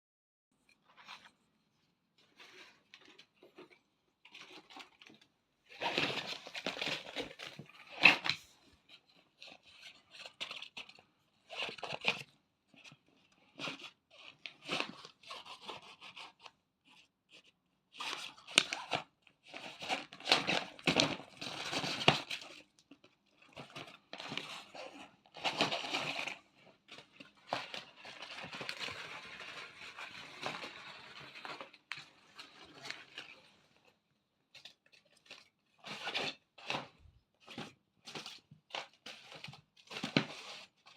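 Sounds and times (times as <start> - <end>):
crinkly tunnel rustling: 23.4 - 40.9.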